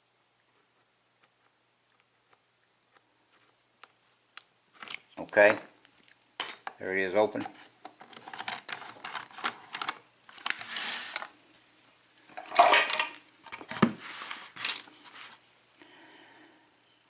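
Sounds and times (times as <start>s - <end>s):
metal tools clinking and rattling: 8.0s - 9.9s, 12.3s - 13.2s.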